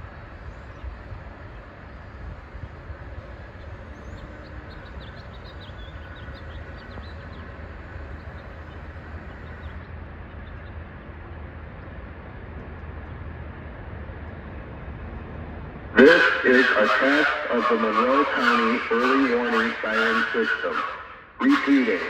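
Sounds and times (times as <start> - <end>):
low background rumble: 0.0 - 22.0
small birds chirping: 0.4 - 13.4.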